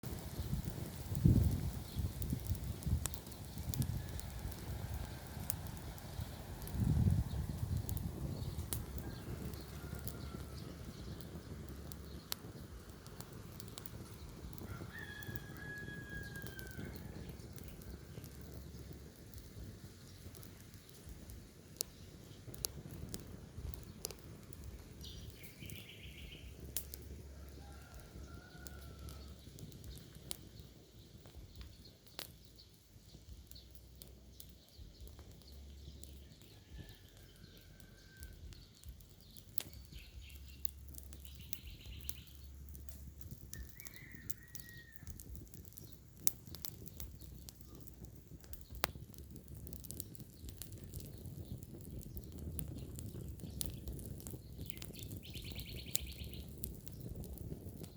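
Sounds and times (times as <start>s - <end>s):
fire crackling and popping: 0.0s - 57.9s.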